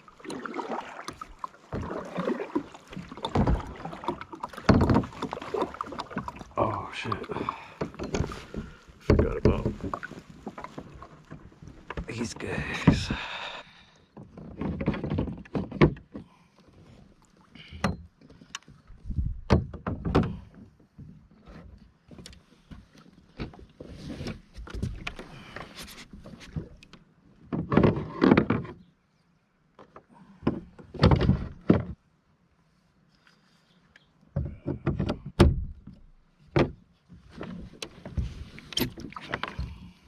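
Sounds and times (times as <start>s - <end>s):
gear knocking against kayak hull: 2.9s - 12.2s.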